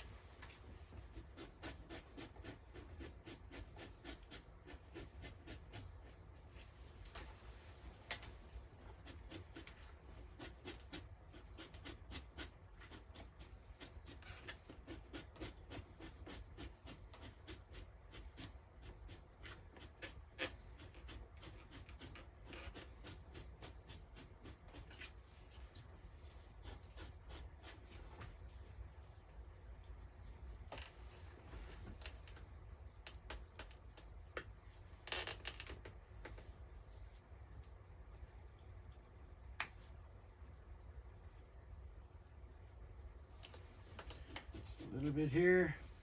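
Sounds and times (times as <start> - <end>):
knife scraping hide: 0.4 - 7.4, 8.2 - 28.7, 43.4 - 46.0.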